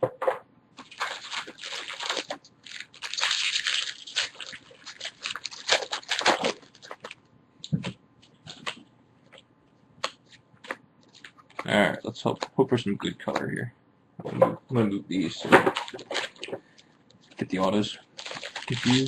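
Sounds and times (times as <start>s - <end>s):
card pack wrappers crinkling: 0.8s - 7.2s, 8.3s - 9.4s, 10.0s - 11.8s, 15.2s - 19.0s
cards being handled: 0.8s - 9.4s, 10.0s - 11.7s.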